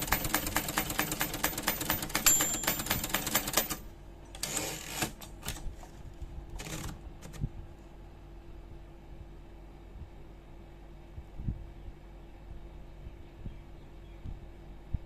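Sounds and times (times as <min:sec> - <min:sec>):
typewriter bell ding: 0:00.0 - 0:03.8
typewriter carriage rasping sweeps: 0:00.0 - 0:03.8, 0:04.4 - 0:05.6
typewriter key strikes: 0:00.0 - 0:03.8.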